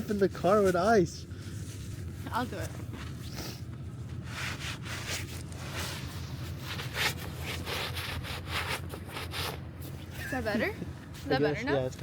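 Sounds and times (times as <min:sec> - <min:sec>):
ice scraper scraping ice: 0:06.7 - 0:09.6.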